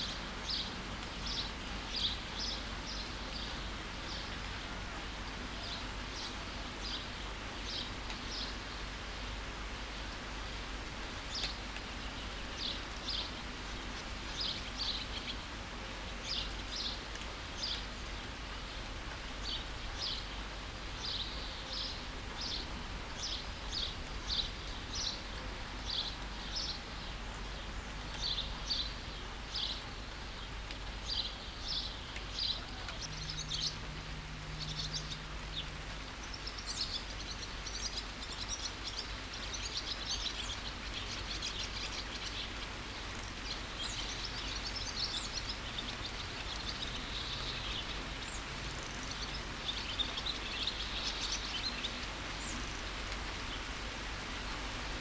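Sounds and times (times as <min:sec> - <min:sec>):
steady rain hiss: 0:00.0 - 0:55.0
bird chirping and twittering: 0:34.6 - 0:52.8.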